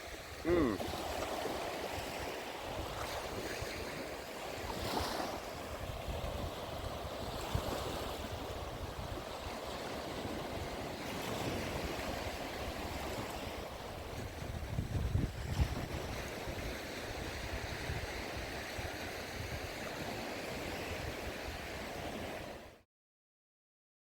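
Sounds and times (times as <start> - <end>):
small waves washing onto shore: 0.0 - 22.8
wind buffeting microphone: 1.0 - 21.8.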